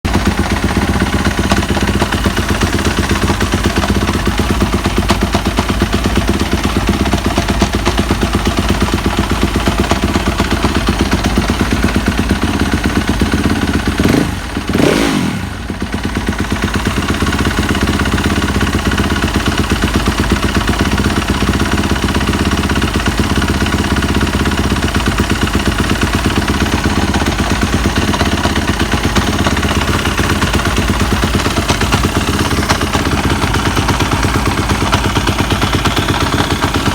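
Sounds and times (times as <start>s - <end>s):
motorcycle engine idling with knocking: 0.0s - 36.9s.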